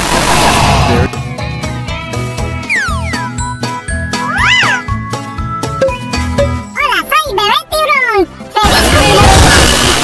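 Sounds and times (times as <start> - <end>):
loud rushing noise: 0.0 - 1.1.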